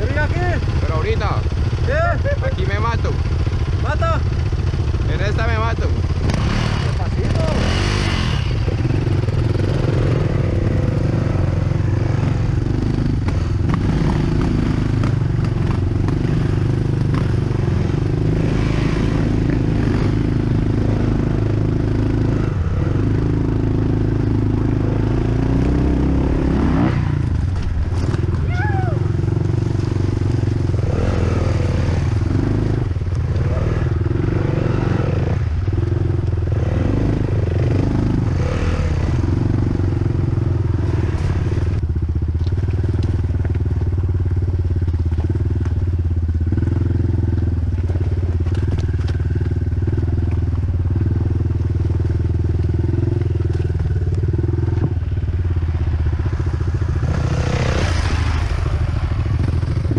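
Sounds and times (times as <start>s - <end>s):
dirt bike engine running: 0.0s - 59.9s
rush of noise: 17.2s - 29.2s.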